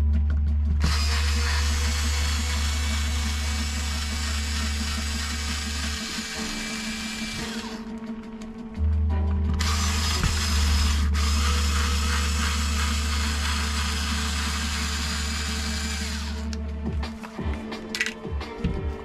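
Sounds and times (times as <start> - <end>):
electric screwdriver running: 0.8 - 7.9, 9.6 - 16.6.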